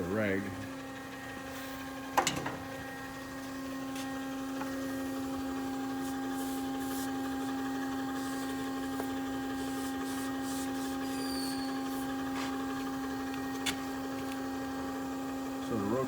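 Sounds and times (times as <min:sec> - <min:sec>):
electric pump motor humming: 0:00.0 - 0:16.0
light scuffs: 0:03.9 - 0:04.2, 0:12.3 - 0:12.6.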